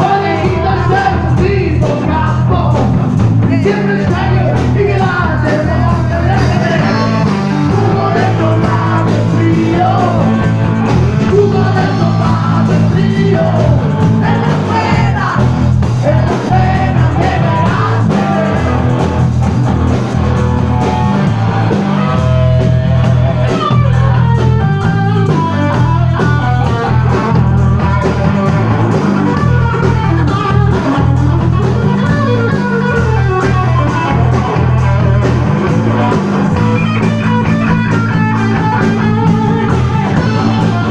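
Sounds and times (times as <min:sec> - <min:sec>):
person singing: 0:00.0 - 0:18.9, 0:29.3 - 0:40.9
electric guitar: 0:00.0 - 0:40.9
steady bass line: 0:00.0 - 0:40.9.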